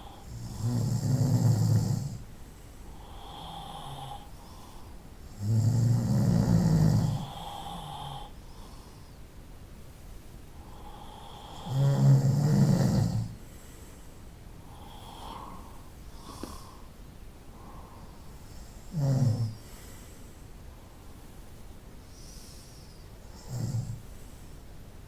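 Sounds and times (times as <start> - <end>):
person snoring: 0.0 - 2.2, 2.9 - 4.7, 5.4 - 8.7, 10.7 - 13.4, 18.9 - 19.6
faint breathing: 1.8 - 5.3, 7.0 - 9.4, 13.2 - 21.4, 22.0 - 24.7.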